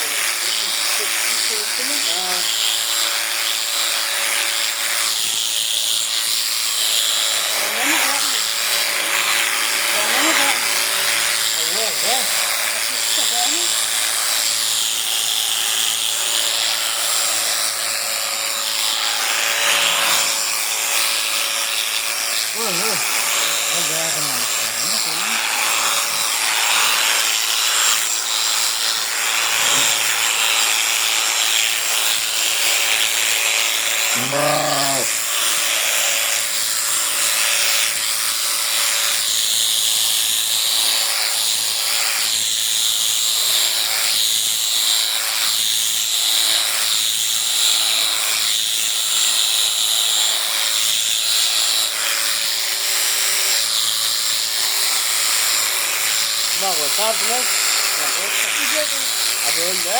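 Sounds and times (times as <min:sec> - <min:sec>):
electric sheep shears running: 0:00.0 - 0:59.9
sheep bleating: 0:34.1 - 0:35.2.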